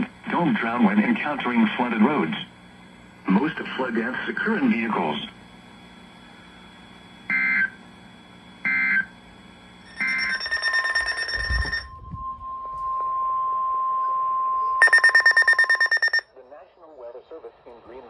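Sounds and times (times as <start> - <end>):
warbling two-tone data bursts: 9.9 - 12.8, 14.8 - 16.2
rapidly pulsing beeping tone: 9.9 - 16.2
steady single-pitch alert tone: 9.9 - 16.2.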